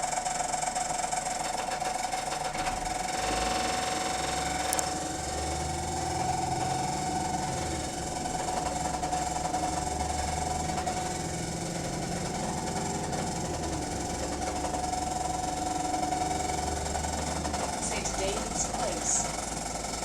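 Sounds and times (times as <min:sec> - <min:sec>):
diesel bus engine: 0:00.0 - 0:20.0
gearbox high whine: 0:00.0 - 0:20.0.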